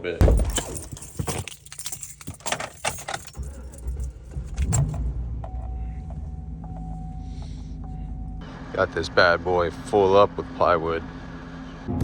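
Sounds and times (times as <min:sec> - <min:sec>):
keys jangling: 0:00.2 - 0:05.0
truck engine starting and idling: 0:00.2 - 0:12.0.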